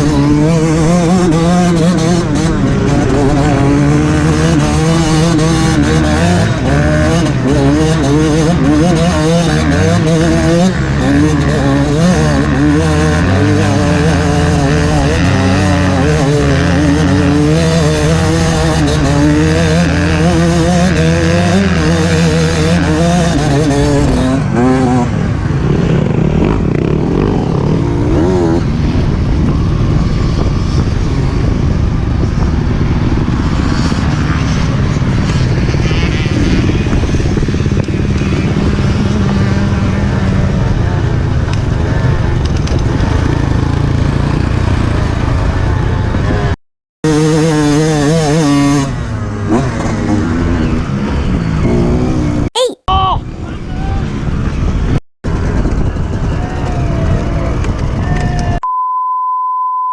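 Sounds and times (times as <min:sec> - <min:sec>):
motorcycle engine revving: 0:00.0 - 0:29.8.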